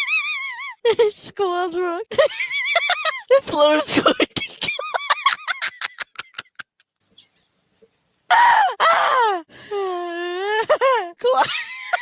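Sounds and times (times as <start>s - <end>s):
person laughing hysterically: 0.0s - 1.2s, 2.1s - 6.9s, 10.4s - 12.0s.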